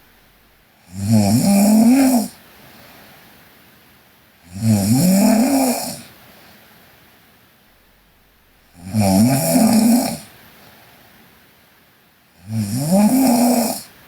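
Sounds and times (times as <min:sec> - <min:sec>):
girl snoring: 0:00.9 - 0:02.4, 0:04.5 - 0:06.1, 0:08.8 - 0:10.3, 0:12.4 - 0:13.9.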